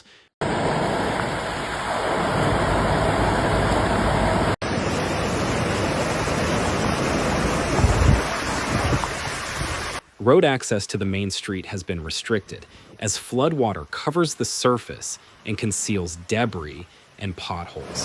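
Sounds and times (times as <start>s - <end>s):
floodwater rushing: 0.4s - 10.0s, 17.3s - 18.0s.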